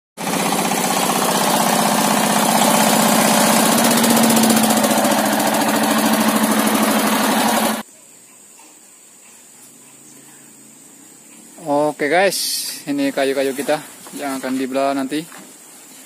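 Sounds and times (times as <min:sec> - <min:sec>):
diesel engine running: 0:00.2 - 0:07.8.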